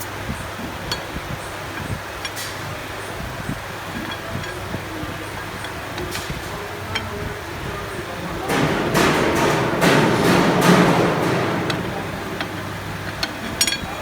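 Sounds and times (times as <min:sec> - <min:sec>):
low machine hum: 0:03.0 - 0:14.0
knocks and clatter: 0:03.5 - 0:14.0.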